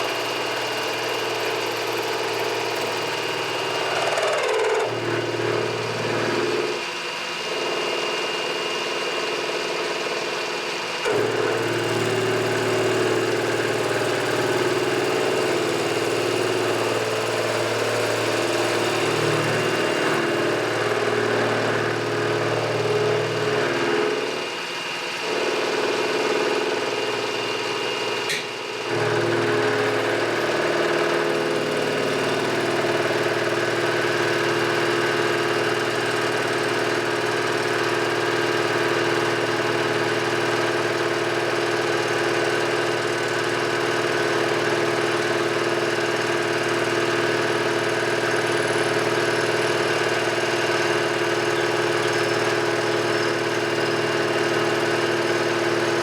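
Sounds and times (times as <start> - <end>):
machine tool motor hum: 0.0 - 8.6, 11.0 - 56.0.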